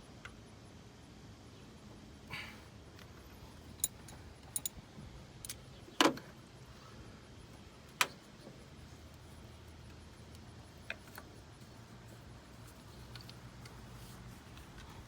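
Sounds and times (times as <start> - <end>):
metallic tool clinks: 3.8 - 4.8.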